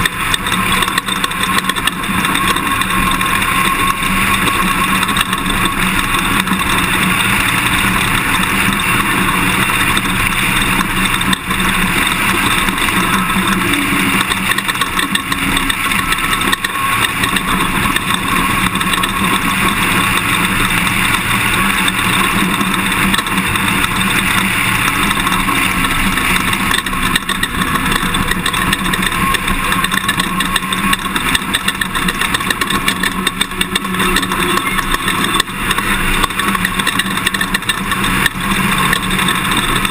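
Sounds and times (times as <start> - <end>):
knocks and rattles: 0.0 - 39.9
pickup engine and tyre noise: 0.0 - 39.9.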